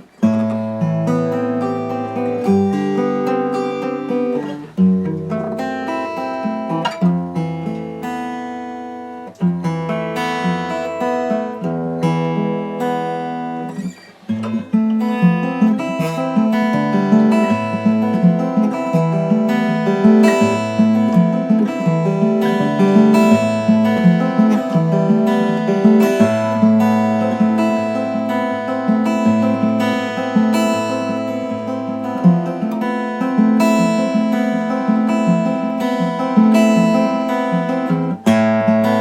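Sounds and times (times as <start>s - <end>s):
acoustic guitar strummed chords: 0.0s - 39.0s.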